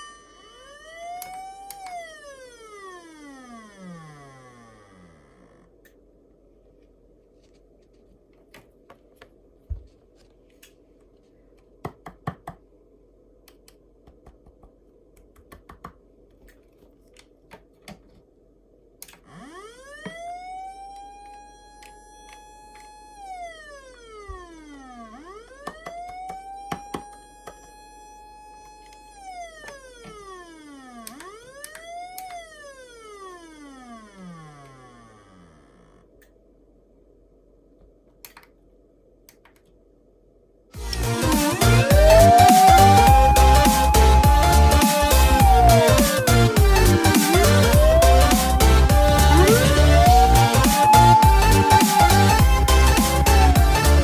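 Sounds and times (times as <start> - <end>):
electronic siren wailing: 0.0 - 5.7, 19.2 - 36.1, 40.8 - 54.0.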